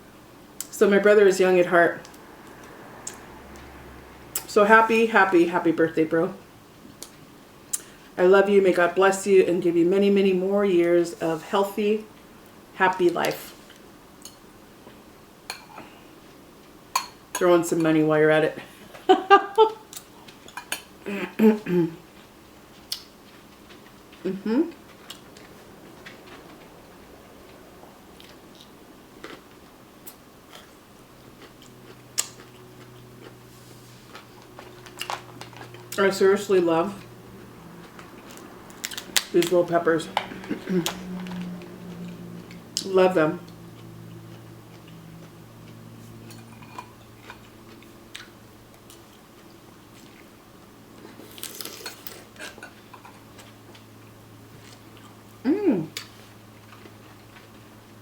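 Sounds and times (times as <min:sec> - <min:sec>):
steady low hum: 0:00.0 - 0:58.0
chewing and biting: 0:22.2 - 0:36.0, 0:37.0 - 0:39.4, 0:43.5 - 0:53.9.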